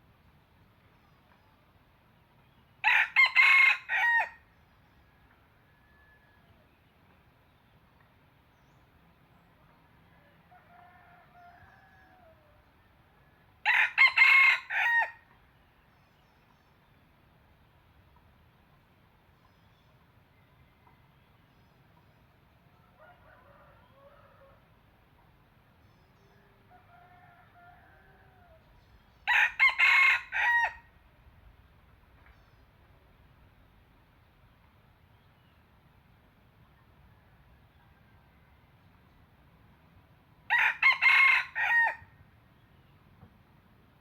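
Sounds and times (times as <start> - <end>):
distant rooster crowing: 2.8 - 4.4, 5.1 - 6.7, 10.1 - 15.2, 22.8 - 24.7, 26.4 - 30.9, 40.5 - 42.1
rooster crowing: 2.8 - 4.4, 10.4 - 12.6, 13.6 - 15.2, 22.9 - 24.6, 26.7 - 28.6, 29.3 - 30.9, 40.5 - 42.1.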